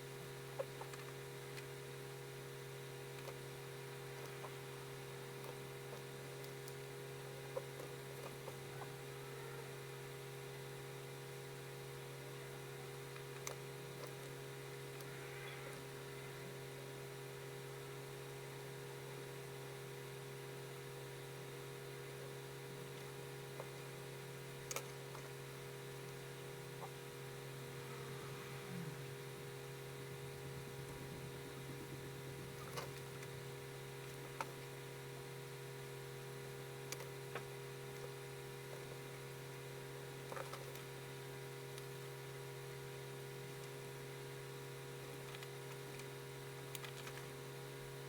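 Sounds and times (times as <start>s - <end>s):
electrical hum: 0.0s - 48.0s
small sharp clicks: 46.7s - 47.3s.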